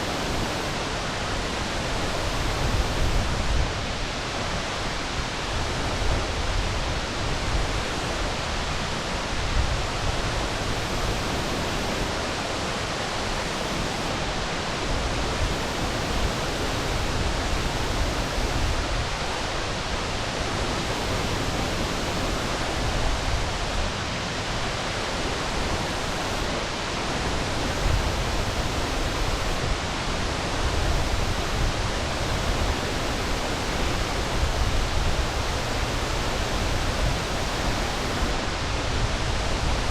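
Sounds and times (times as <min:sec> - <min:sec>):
waterfall rushing: 0:10.3 - 0:38.9.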